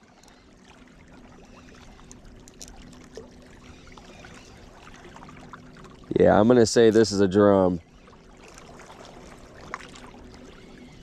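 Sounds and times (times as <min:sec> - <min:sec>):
water trickling and lapping: 0:00.0 - 0:11.0.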